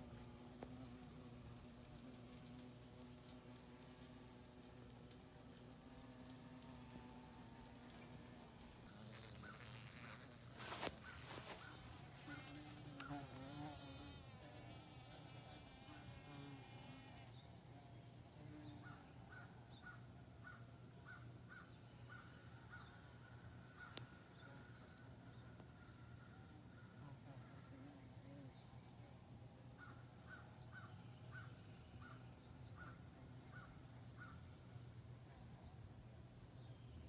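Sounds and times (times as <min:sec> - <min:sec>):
bee buzzing: 0:00.0 - 0:17.3.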